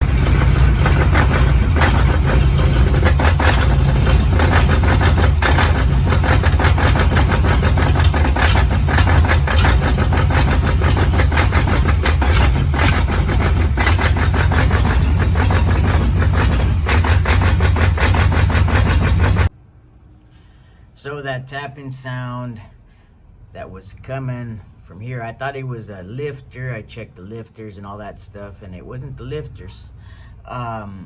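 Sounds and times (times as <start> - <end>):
car engine idling: 0.0 - 19.5
rapid tapping knock: 0.0 - 19.5.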